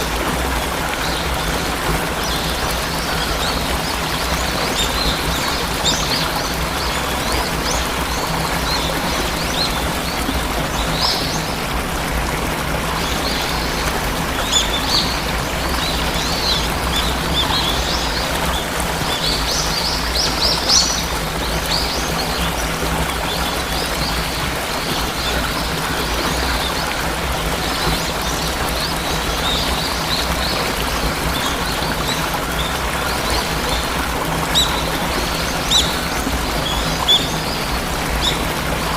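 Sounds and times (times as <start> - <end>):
waterfall rushing: 0.0 - 38.9
small birds chirping: 13.0 - 26.8, 27.4 - 38.9.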